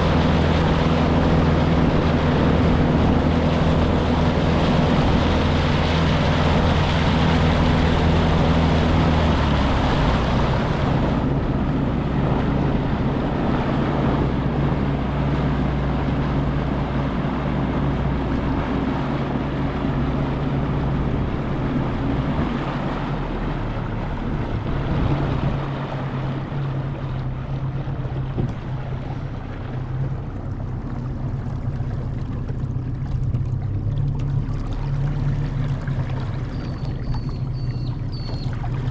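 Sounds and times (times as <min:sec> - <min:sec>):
wind on microphone: 0:00.0 - 0:30.4
outboard motor running: 0:00.0 - 0:38.9
water rushing past hull: 0:00.0 - 0:38.9.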